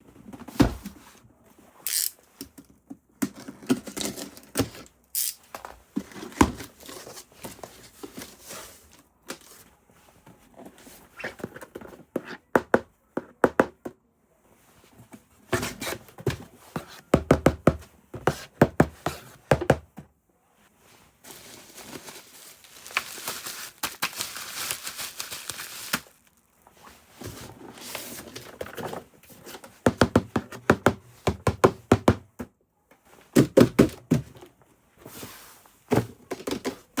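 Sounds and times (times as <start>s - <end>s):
packaging crinkling and tearing: 21.4s - 26.6s.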